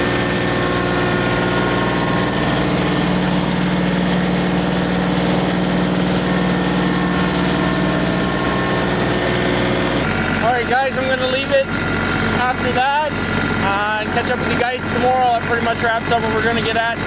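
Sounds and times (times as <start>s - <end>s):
vehicle engine idling: 0.0s - 17.0s.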